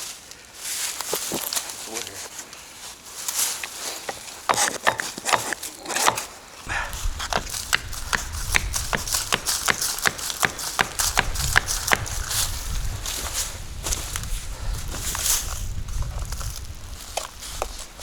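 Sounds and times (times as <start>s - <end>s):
low rumble: 6.7s - 10.0s.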